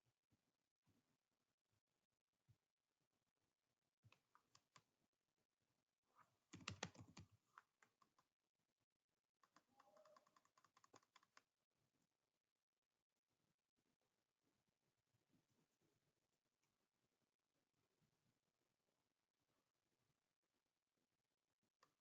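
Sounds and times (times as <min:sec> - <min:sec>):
faint keyboard typing: 0:06.5 - 0:08.3, 0:09.4 - 0:11.5.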